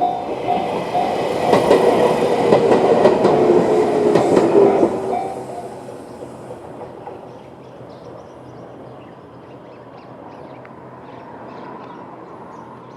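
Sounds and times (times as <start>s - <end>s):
train rail noise rumbling: 0.0s - 11.4s.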